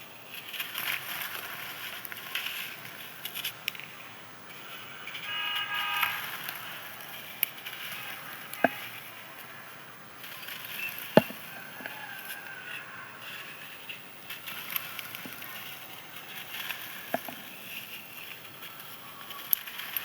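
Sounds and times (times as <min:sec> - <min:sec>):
dry sand-cement crumbling: 0:00.3 - 0:04.8, 0:06.2 - 0:20.0
pieces cracking: 0:10.2 - 0:12.6, 0:13.2 - 0:20.0.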